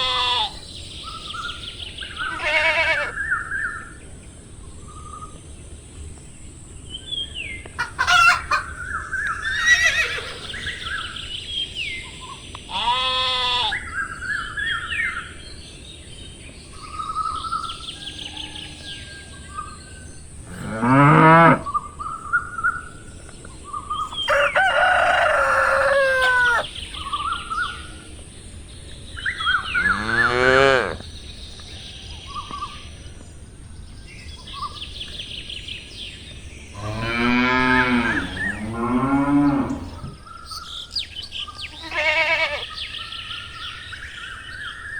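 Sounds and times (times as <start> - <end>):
chickens clucking: 7.8 - 10.5, 24.0 - 26.7
rooster crowing: 24.2 - 26.8.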